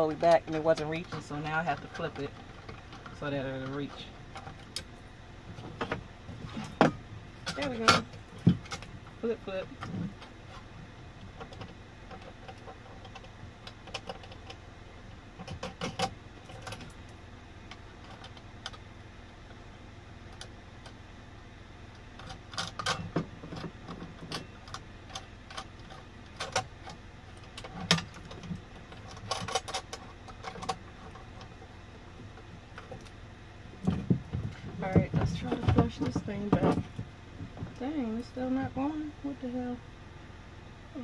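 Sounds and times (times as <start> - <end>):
low hum: 0.0 - 41.0.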